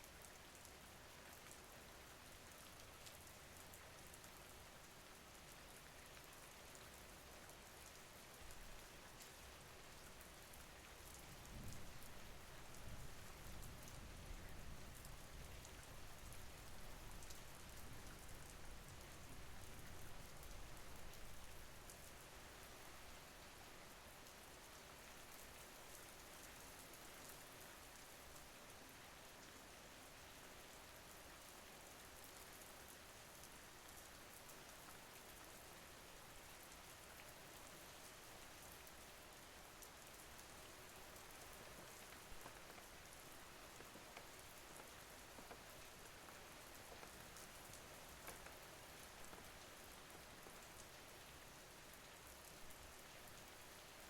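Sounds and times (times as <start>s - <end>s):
faint steady rain: 0.0s - 54.0s
raindrop ticks: 39.8s - 50.9s.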